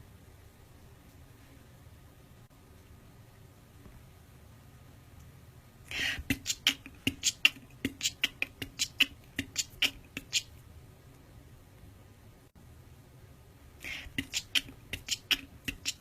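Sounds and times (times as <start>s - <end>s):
person beatboxing: 6.0s - 10.5s, 13.8s - 16.0s.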